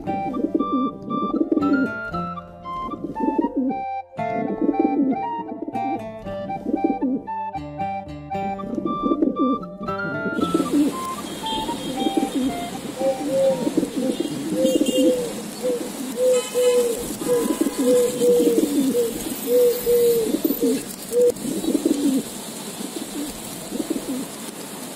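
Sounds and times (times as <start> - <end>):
pigeons cooing: 0.0 - 6.0, 6.6 - 7.3, 8.6 - 24.5
plucked music notes: 0.0 - 14.6.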